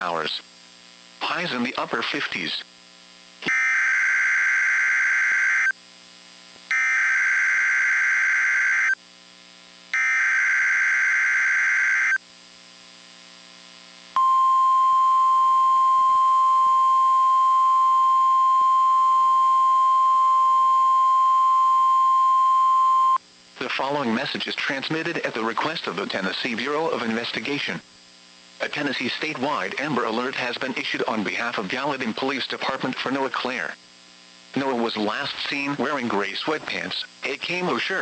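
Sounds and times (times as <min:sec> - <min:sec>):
steady single-pitch alarm tone: 0:03.4 - 0:05.8, 0:06.7 - 0:09.0, 0:09.9 - 0:12.2, 0:14.2 - 0:23.2
harsh digital data bursts: 0:09.9 - 0:12.2.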